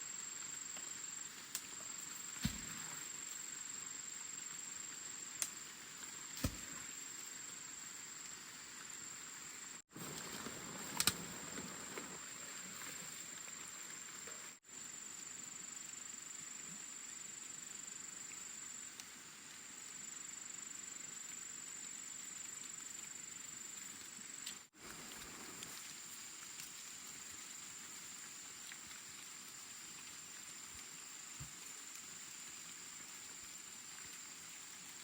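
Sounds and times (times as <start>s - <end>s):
rain hissing: 3.0s - 15.0s, 21.5s - 35.0s.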